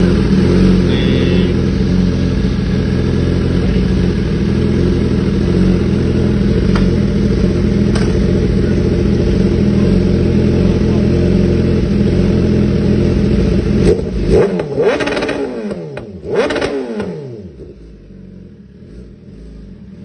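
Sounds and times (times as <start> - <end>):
sharp exhaust cracks: 0.0 - 9.6
motorcycle engine at high revs: 0.0 - 20.0.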